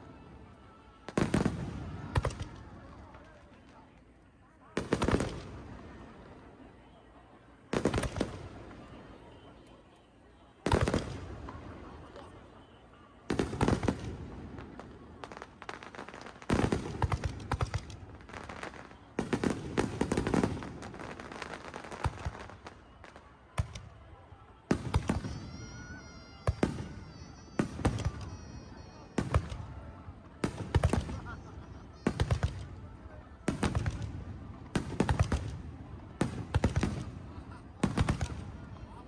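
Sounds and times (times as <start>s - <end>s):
fireworks crackling: 0.0s - 39.0s
fireworks booming: 13.3s - 22.8s, 24.7s - 32.8s, 33.4s - 39.0s.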